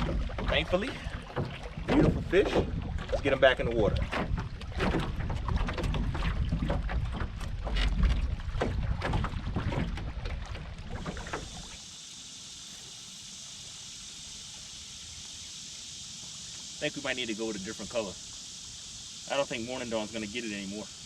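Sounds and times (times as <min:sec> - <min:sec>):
wind rumbling on microphone: 0:00.0 - 0:11.7
steady high hiss: 0:11.1 - 0:21.0.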